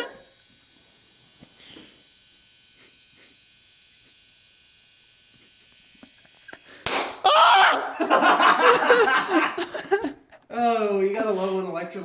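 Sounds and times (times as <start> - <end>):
capacitor bursting with sharp bang: 6.8 - 7.2.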